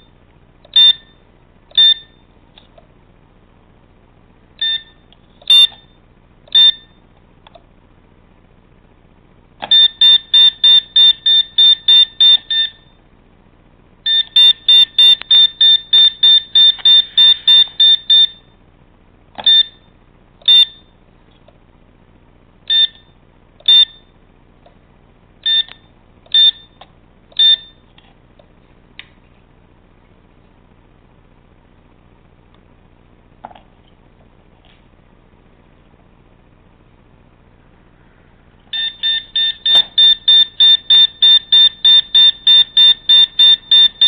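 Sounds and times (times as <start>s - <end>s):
short high-pitched electronic beeps: 14.1s - 18.5s.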